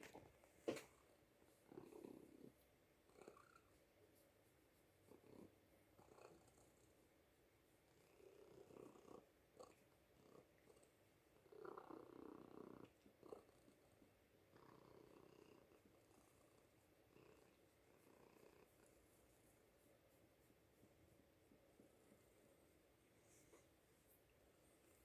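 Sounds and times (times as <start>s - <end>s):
cat purring: 0.0s - 7.2s, 7.8s - 25.0s.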